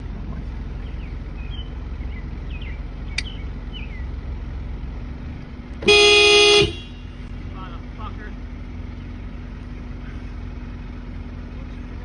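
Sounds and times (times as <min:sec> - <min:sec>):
low outdoor rumble: 0:00.0 - 0:12.0
birds chirping: 0:00.4 - 0:04.6, 0:07.8 - 0:12.0
loud horn blast: 0:05.8 - 0:07.2.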